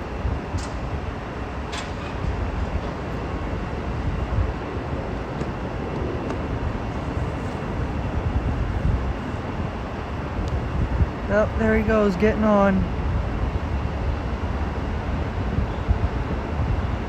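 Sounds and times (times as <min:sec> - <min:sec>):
train engine low rumble: 0:00.0 - 0:17.0
wind on microphone: 0:00.0 - 0:17.0.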